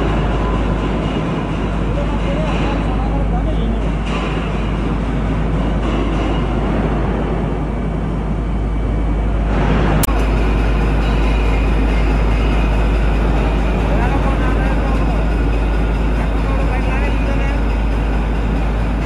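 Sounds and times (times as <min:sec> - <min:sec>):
heavy mechanical rumbling: 0:00.0 - 0:19.0.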